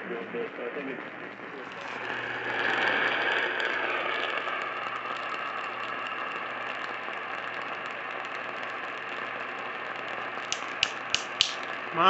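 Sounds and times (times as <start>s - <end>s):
radio static hiss: 0.0s - 3.1s
faint low hum: 0.0s - 4.5s.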